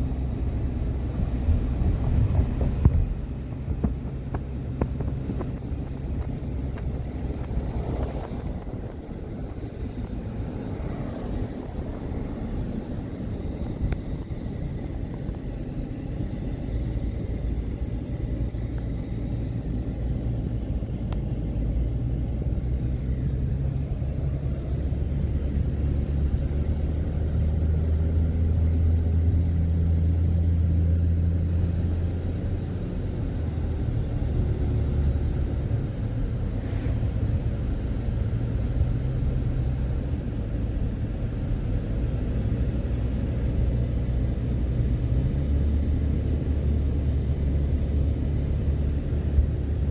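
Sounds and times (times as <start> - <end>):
car engine from inside: 0.0 - 49.9
road rumble: 0.0 - 49.9.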